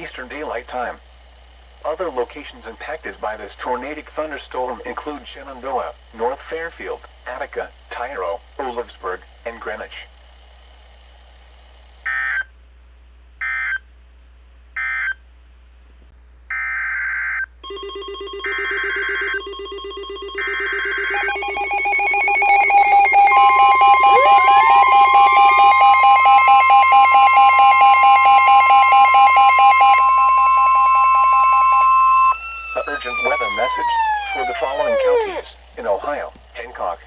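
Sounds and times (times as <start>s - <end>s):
steady warning tone: 17.6s - 35.6s
pulsing beeps: 17.7s - 35.5s
rising siren tone: 17.7s - 35.5s
warbling digital data bursts: 18.5s - 35.4s.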